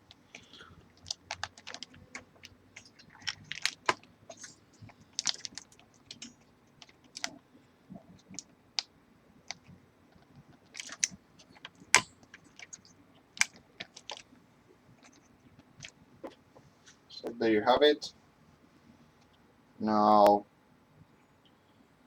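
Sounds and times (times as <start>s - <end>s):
computer parts clicking and tapping: 0.1s - 7.4s, 10.6s - 14.2s.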